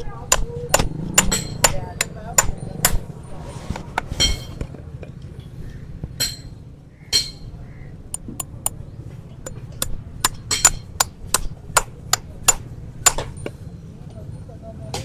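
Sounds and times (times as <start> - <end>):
hammer striking metal: 0.0 - 3.2, 4.2 - 4.6, 6.2 - 8.8, 9.4 - 13.5.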